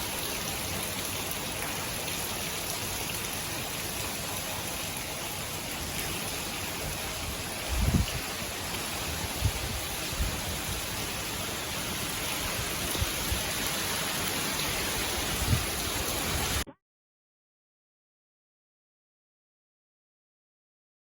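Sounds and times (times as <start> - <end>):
heavy rain: 0.0 - 16.7.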